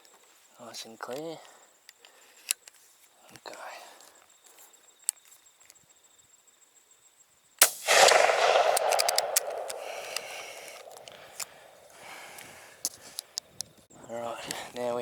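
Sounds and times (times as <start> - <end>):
shotgun shot: 7.6 - 11.9
rolling echo: 7.6 - 12.4.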